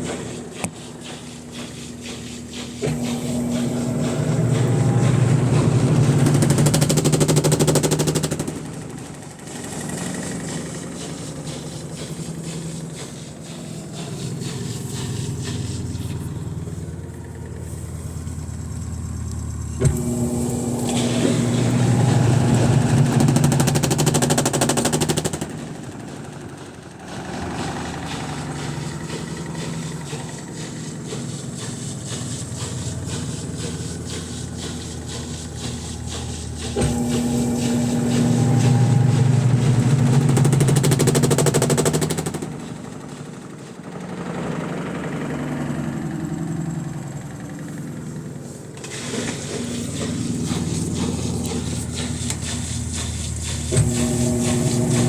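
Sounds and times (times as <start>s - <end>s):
loud rapid rattling: 0.0s - 17.1s, 21.0s - 46.5s
washing machine motor hum: 0.0s - 55.0s.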